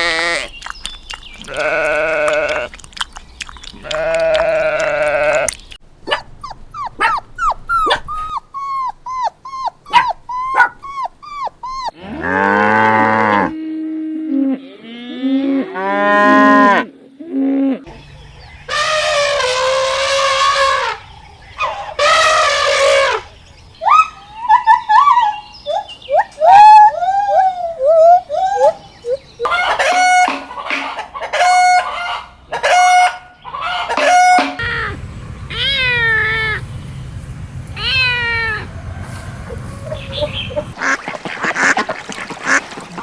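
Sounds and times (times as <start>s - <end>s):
sheep bleating: 1.4s - 2.7s, 3.8s - 5.5s.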